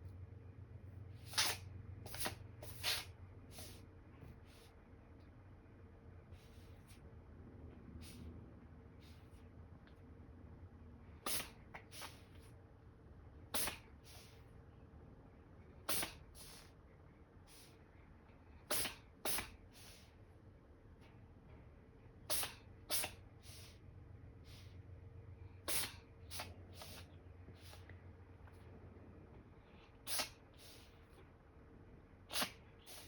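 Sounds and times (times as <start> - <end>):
cat sneezing: 1.2 - 3.9, 8.0 - 8.3, 11.1 - 12.5, 13.5 - 14.4, 15.8 - 16.8, 17.5 - 17.8, 18.5 - 20.1, 22.2 - 23.8, 25.6 - 27.9, 29.9 - 31.0, 32.2 - 33.0.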